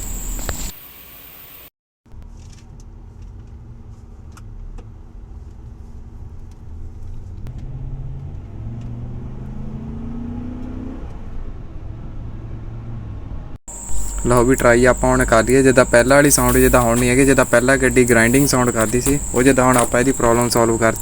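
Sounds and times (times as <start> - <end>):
pickup engine accelerating: 7.5 - 10.9.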